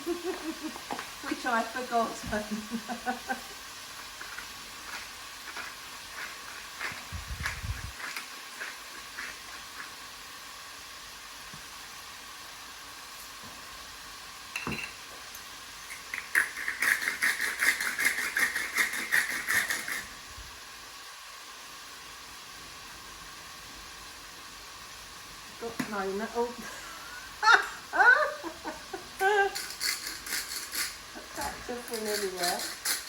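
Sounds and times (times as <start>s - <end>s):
chicken sizzling in a pan: 0.0s - 33.0s.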